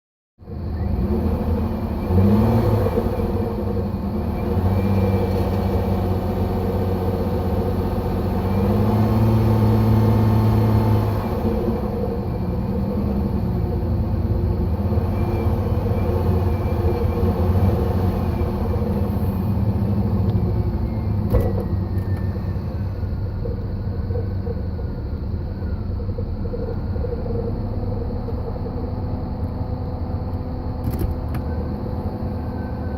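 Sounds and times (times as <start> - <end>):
car engine running: 0.5 - 32.9.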